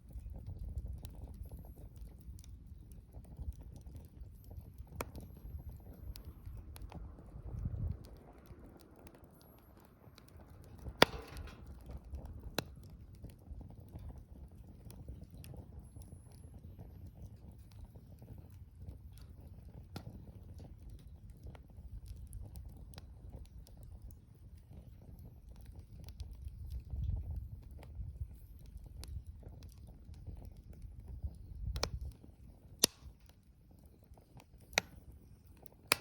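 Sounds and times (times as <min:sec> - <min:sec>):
wood fire crackling: 0:00.0 - 0:36.0
low steady rumble: 0:04.7 - 0:14.6
loud sharp pop: 0:11.0 - 0:11.7.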